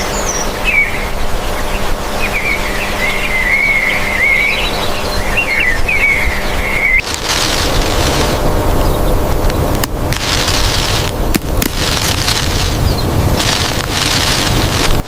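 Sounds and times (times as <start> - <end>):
birds chirping: 0.0 - 15.0
broad rushing noise: 7.0 - 15.0.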